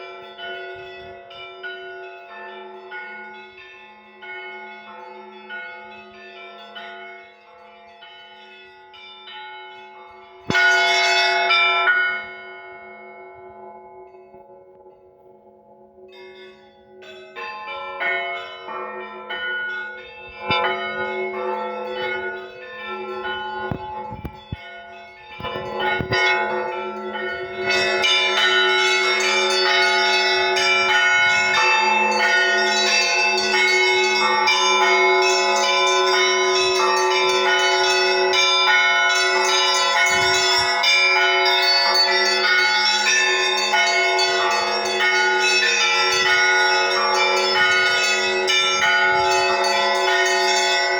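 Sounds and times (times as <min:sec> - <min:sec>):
church bells ringing: 0:00.0 - 0:50.9
heavy bell striking: 0:08.0 - 0:15.2, 0:16.1 - 0:50.9.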